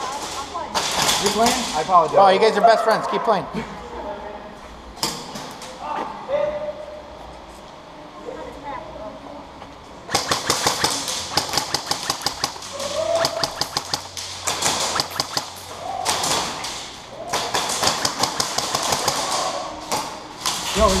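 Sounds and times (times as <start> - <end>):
airsoft guns firing: 10.1 - 21.0.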